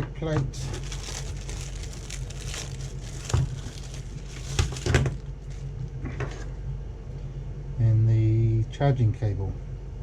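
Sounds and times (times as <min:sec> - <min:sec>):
plastic packaging crinkling: 0:00.6 - 0:05.3.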